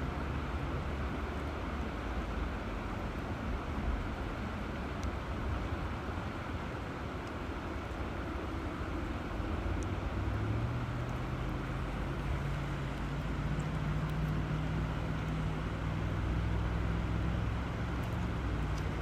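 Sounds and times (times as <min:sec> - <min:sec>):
river water rushing: 0:00.0 - 0:19.0
low engine drone: 0:06.4 - 0:19.0.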